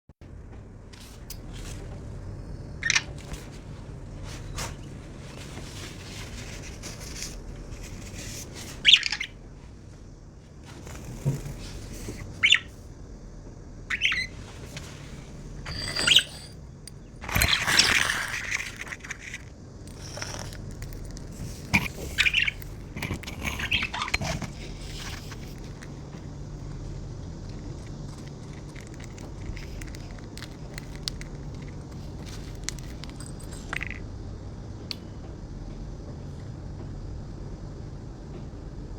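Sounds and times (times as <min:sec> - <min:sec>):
budgerigars chirping and squawking: 0:08.8 - 0:09.3, 0:12.4 - 0:12.7, 0:13.9 - 0:14.3, 0:22.0 - 0:22.7, 0:23.6 - 0:24.2
scraping sounds: 0:17.2 - 0:26.3.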